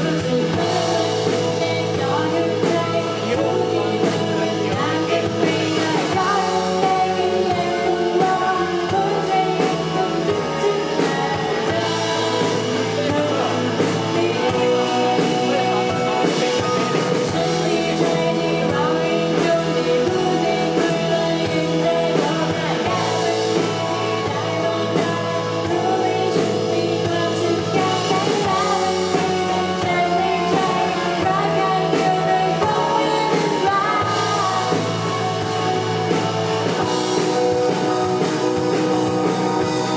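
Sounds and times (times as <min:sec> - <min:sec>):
drum kit steady beat: 0:00.0 - 0:39.9
electronic pop band playing: 0:00.0 - 0:39.9
person singing: 0:00.0 - 0:39.9.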